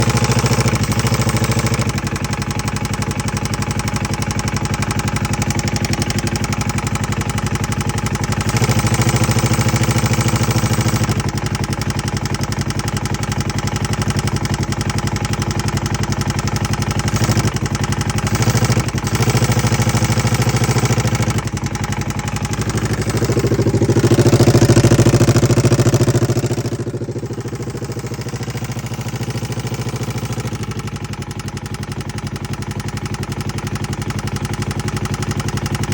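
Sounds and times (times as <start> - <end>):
engine idling and revving: 0.0 - 35.9
engine knocking: 0.0 - 35.9.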